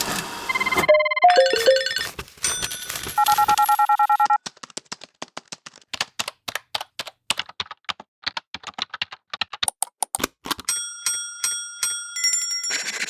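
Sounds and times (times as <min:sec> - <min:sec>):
electronic phone trill: 0:00.5 - 0:02.1, 0:03.1 - 0:04.4
keys typing: 0:00.5 - 0:10.6.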